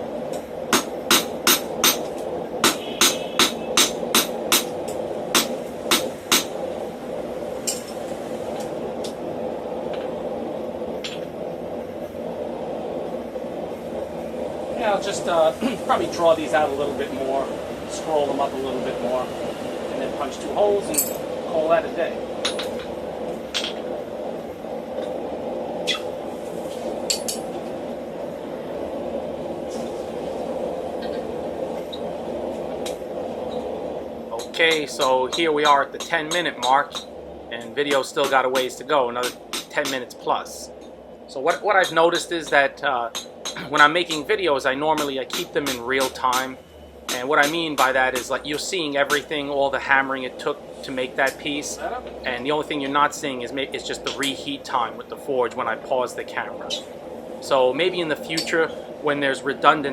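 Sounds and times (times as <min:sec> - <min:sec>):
steady background hum: 0:00.0 - 0:59.9
steady rushing background: 0:00.0 - 0:59.9
hammer striking steel on anvil: 0:00.7 - 0:04.7, 0:37.9 - 0:40.0, 0:44.9 - 0:48.3.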